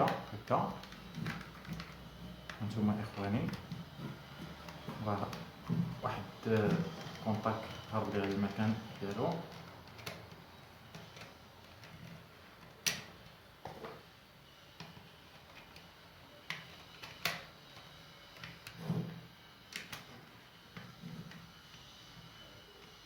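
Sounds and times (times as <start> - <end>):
small parts clicking and knocking: 0.0 - 14.1, 14.8 - 18.8.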